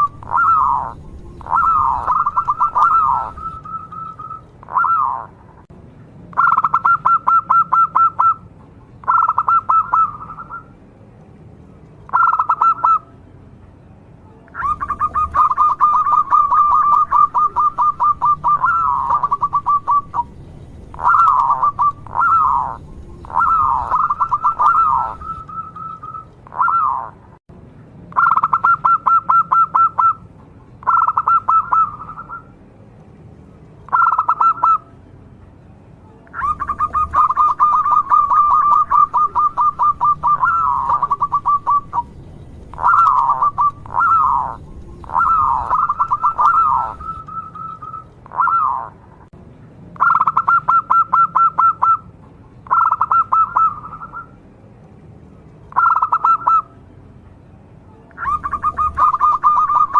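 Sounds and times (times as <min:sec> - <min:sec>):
dove trilled cooing: 0:00.0 - 0:05.4, 0:06.4 - 0:08.4, 0:09.0 - 0:10.7, 0:12.1 - 0:13.0, 0:14.5 - 0:27.2, 0:28.2 - 0:30.2, 0:30.8 - 0:32.5, 0:33.9 - 0:34.9, 0:36.3 - 0:49.0, 0:50.0 - 0:52.0, 0:52.7 - 0:54.4, 0:55.7 - 0:56.7, 0:58.2 - 0:59.9.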